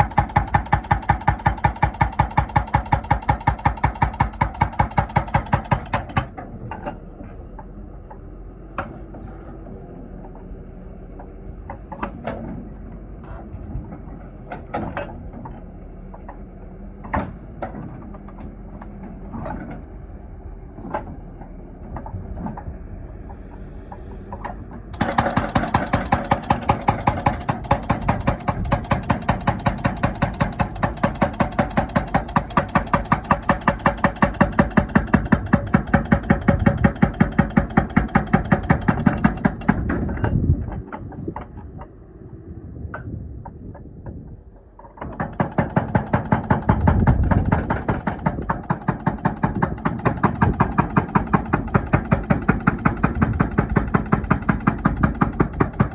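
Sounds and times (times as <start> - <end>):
hydraulic breaker hammering: 0.0 - 7.0, 23.3 - 41.9, 44.6 - 55.9
excavator engine running: 0.0 - 55.9
sharp knocks: 23.3 - 41.9, 44.8 - 55.9.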